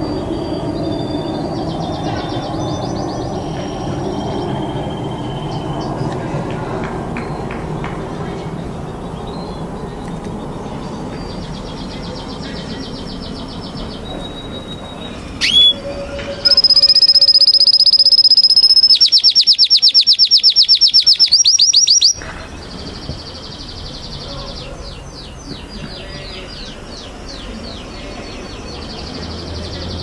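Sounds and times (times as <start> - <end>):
canary singing: 11.3 - 22.2.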